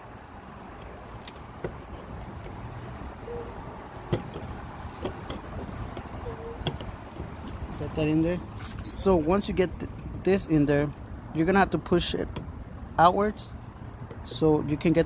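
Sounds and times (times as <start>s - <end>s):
small clicks and knocks: 0.4s - 8.8s.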